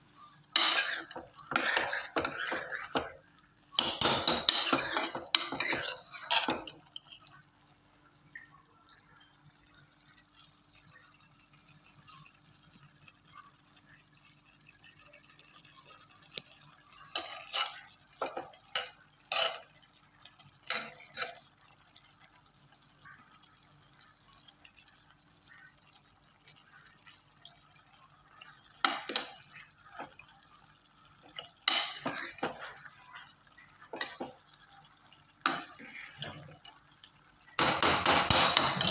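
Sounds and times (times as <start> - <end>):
faint steady background noise: 0.0 - 38.9
utensils clinking against dishes: 0.6 - 3.2, 3.8 - 7.3, 37.6 - 38.9.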